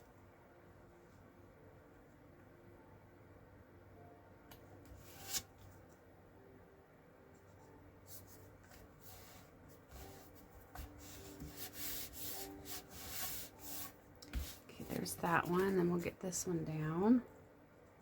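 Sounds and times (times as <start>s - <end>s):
paper rustling and rubbing: 8.1s - 15.8s.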